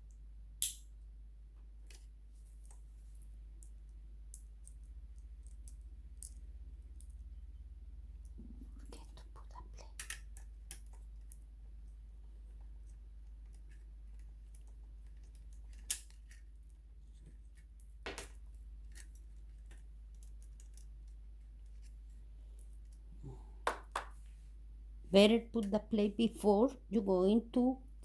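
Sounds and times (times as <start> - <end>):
steady low hum: 0.0 - 28.0
small hard parts clicking: 9.5 - 11.5, 17.5 - 23.0.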